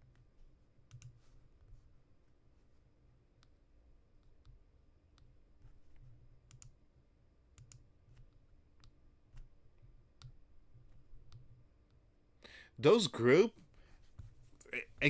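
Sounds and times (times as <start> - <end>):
faint computer clicks: 0.9 - 1.2.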